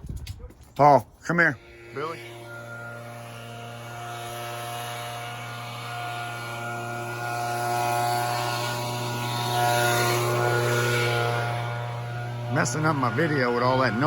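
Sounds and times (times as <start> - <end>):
aircraft engine drone: 1.2 - 14.0.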